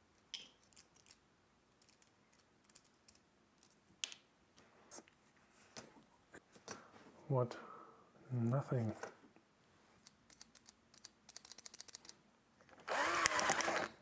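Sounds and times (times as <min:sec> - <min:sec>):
small tools clicking on desk: 0:10.0 - 0:12.2.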